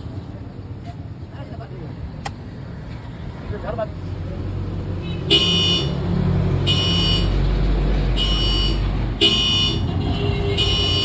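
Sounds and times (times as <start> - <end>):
motorcycle horn blasts: 5.3 - 6.0, 8.2 - 11.0.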